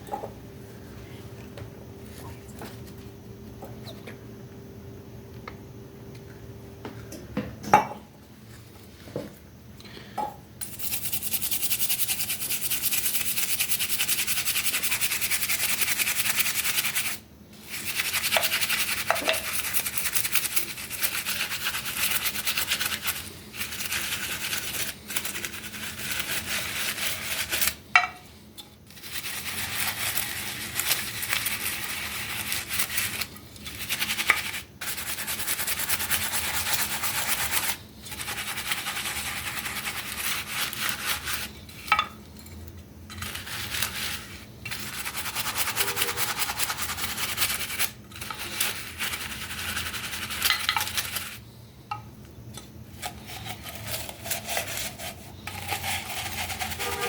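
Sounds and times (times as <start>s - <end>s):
abrasive rubbing on mug: 44.2s - 47.4s, 53.0s - 57.0s.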